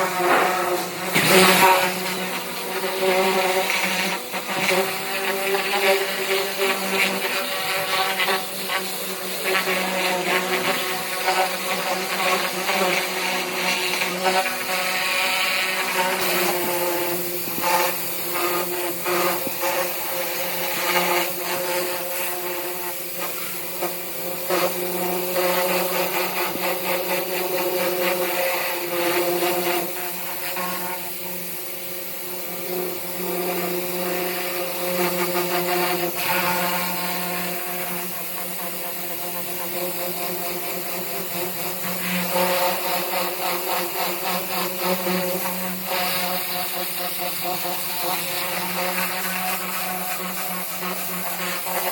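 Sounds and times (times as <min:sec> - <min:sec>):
pressure washer motor hum: 0:00.0 - 0:34.8
spray hissing against car body: 0:00.0 - 0:51.9.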